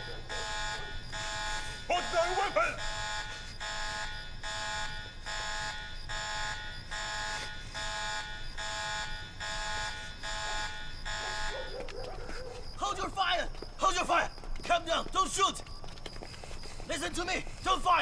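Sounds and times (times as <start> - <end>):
electronic alarm buzzer pulsing: 0.0 - 11.8.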